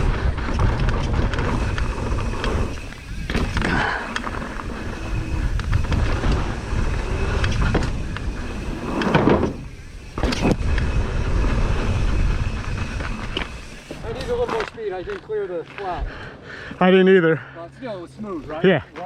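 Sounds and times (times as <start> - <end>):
wind rumble on microphone: 0.0 - 14.6
bike tyres and frame rattling: 0.0 - 16.3.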